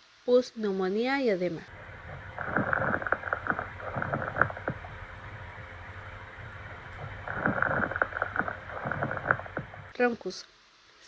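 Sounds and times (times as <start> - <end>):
lung crackles through stethoscope: 1.7 - 10.0.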